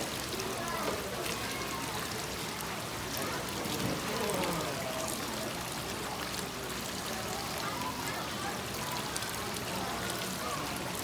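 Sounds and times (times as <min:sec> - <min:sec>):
faint voices: 0:00.0 - 0:11.0.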